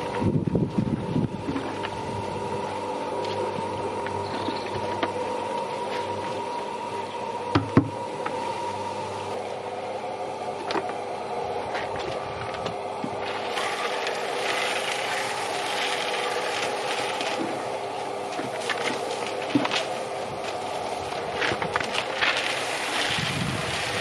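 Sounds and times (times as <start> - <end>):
steady mechanical hum: 0.0 - 24.0
sharp knocks: 7.5 - 8.0.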